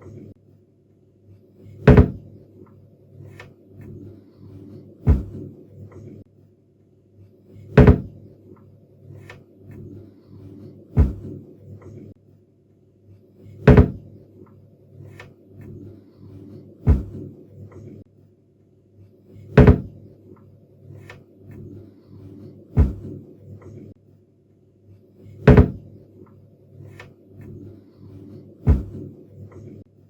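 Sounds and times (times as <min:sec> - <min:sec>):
cabinet door shutting: 0:01.9 - 0:02.2, 0:07.8 - 0:08.1, 0:13.7 - 0:14.0, 0:19.6 - 0:19.9, 0:25.4 - 0:25.8, 0:28.6 - 0:29.0.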